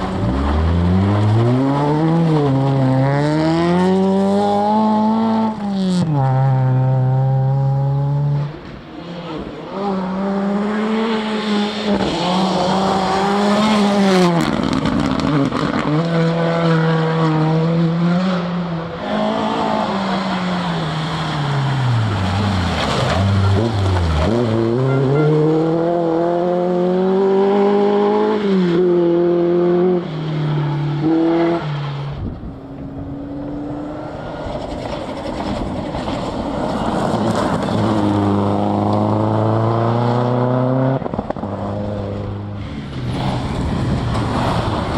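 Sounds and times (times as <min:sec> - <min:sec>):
rally car engine revving: 0:00.0 - 0:44.9.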